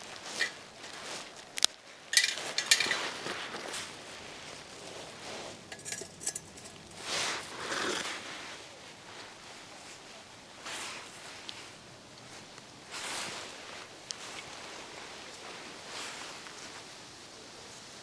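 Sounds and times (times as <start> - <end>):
soft rustle: 0.0 - 11.8
metal cookware clinking: 0.2 - 1.2, 2.1 - 8.0.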